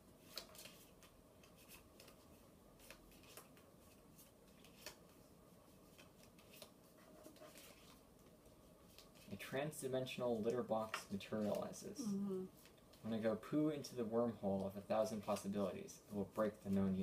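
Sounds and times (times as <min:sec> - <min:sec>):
playing cards being shuffled: 0:00.2 - 0:05.2.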